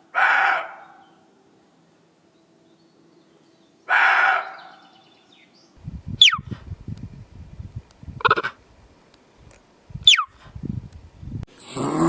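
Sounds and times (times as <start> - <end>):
animal rough cry: 0.2 - 1.0, 11.6 - 12.0.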